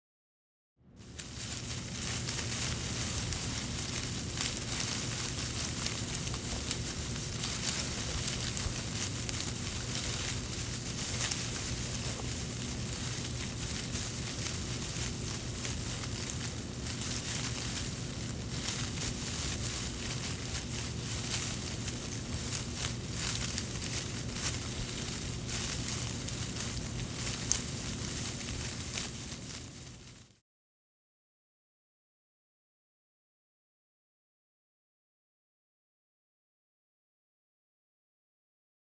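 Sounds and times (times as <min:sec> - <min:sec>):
bushes and branches rustling: 0:01.0 - 0:30.4.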